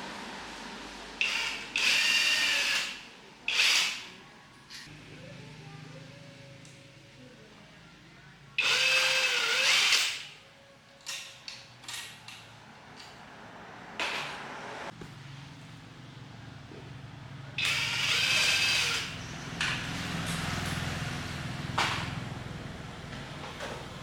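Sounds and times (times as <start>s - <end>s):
power tool motor whine: 17.6s - 20.8s.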